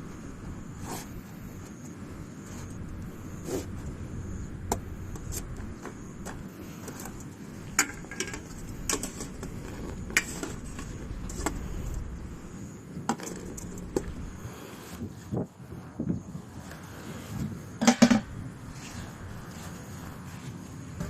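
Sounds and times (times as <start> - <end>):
low steady rumble: 0.0 - 21.0
camping gear clinking: 4.7 - 14.5.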